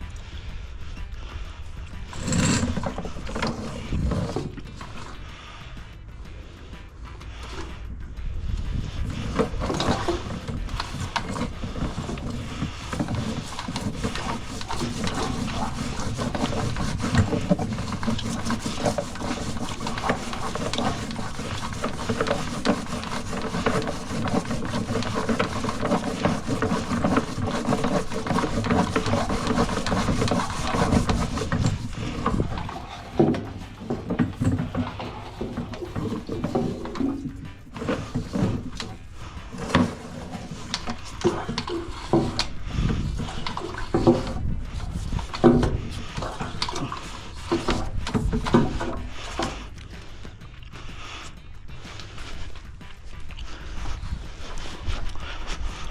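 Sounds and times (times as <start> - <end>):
push rod rattling in a pipe: 2.0 - 5.2, 9.0 - 49.9.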